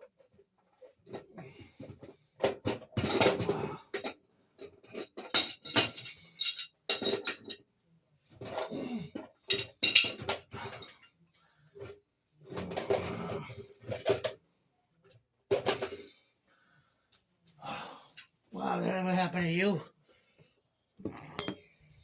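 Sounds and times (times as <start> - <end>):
tools clanking on metal: 2.5 - 7.6.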